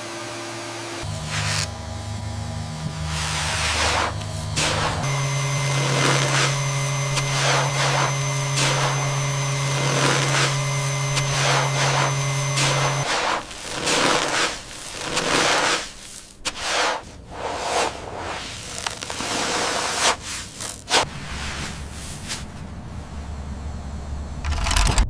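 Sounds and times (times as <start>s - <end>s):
robot vacuum motor hum: 0.0s - 16.1s
brushes sweeping grit: 3.0s - 22.7s.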